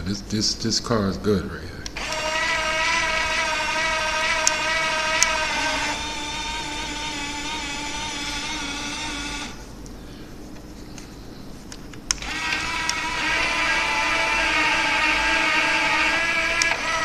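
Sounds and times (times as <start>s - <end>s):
toy car electric motor whining: 2.0s - 9.6s, 12.2s - 17.0s.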